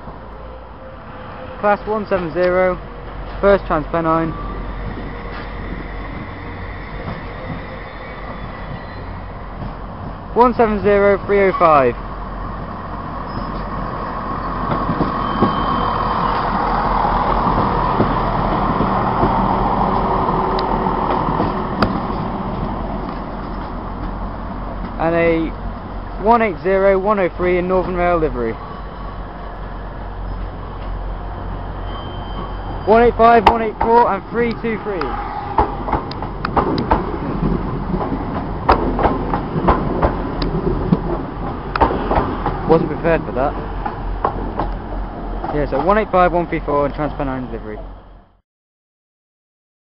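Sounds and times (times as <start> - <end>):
diesel train engines rumbling: 0.0 - 48.4
train wheels clacking: 17.3 - 22.8, 32.4 - 44.8.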